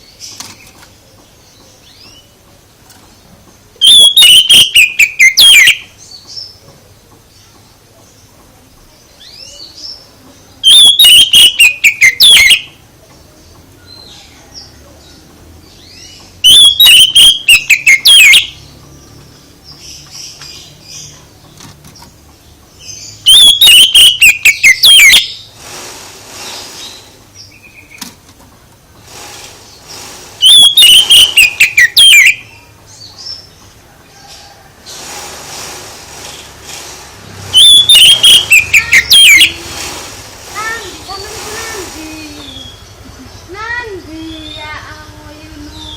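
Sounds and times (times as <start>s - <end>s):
songbird whistled call: 3.8s - 6.0s, 10.6s - 12.8s, 15.8s - 18.7s, 23.1s - 25.5s, 30.4s - 33.4s, 37.5s - 39.8s
faint bird chirps: 22.8s - 25.5s
short hiss: 25.5s - 27.4s, 29.0s - 30.5s, 34.8s - 37.5s, 39.6s - 42.4s.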